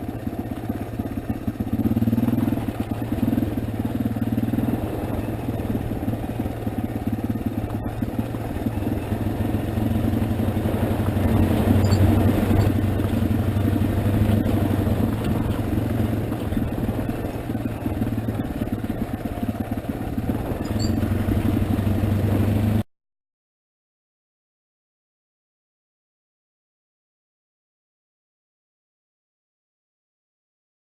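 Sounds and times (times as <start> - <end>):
rattling over rough ground: 0.0 - 22.8
motorcycle engine running: 0.0 - 22.9.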